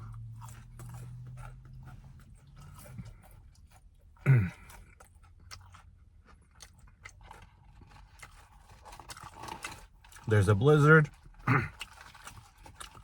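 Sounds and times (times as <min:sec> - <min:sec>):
crunchy chewing: 0:00.0 - 0:10.4, 0:11.0 - 0:13.0
person grunting: 0:04.3 - 0:04.6.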